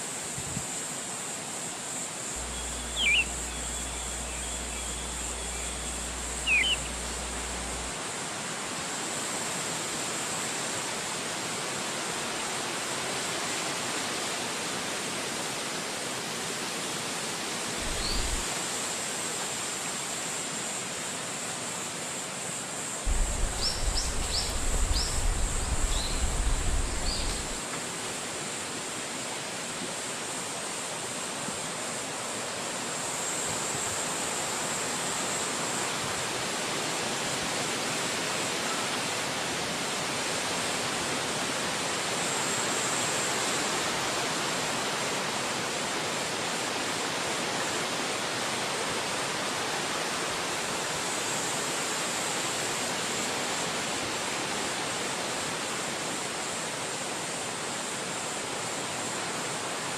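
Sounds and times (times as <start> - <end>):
wind through forest trees: 0.0 - 59.9
high bird chirps: 2.4 - 7.8.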